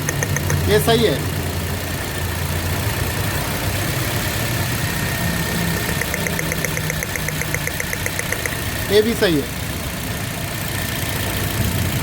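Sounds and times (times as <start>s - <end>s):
fast even ticking: 0.0s - 1.1s, 5.8s - 9.2s
car engine idling: 0.0s - 12.0s.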